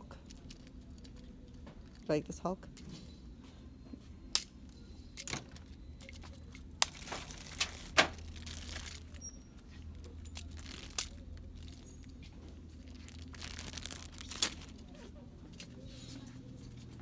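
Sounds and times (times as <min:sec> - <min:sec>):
low background hum: 0:00.0 - 0:17.0
plastic toys clicking and tapping: 0:04.3 - 0:14.8.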